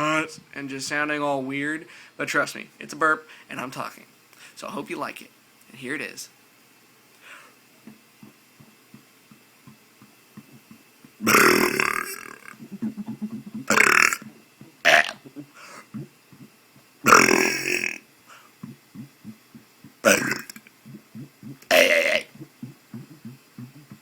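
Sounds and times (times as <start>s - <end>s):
man burping: 10.5s - 18.0s, 18.6s - 24.0s.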